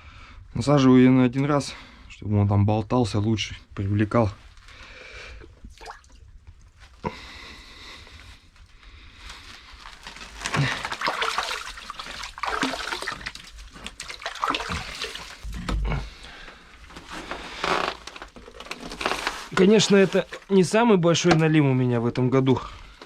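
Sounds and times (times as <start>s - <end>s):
water splashing and squelching: 5.6s - 6.6s, 9.9s - 16.3s, 17.2s - 20.7s.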